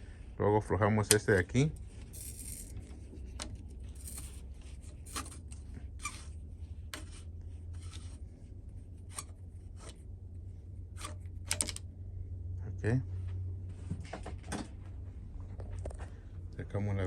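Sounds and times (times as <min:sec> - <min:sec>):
tool clicking and scraping on bolts: 0:01.0 - 0:06.3, 0:06.9 - 0:08.2, 0:11.0 - 0:11.8.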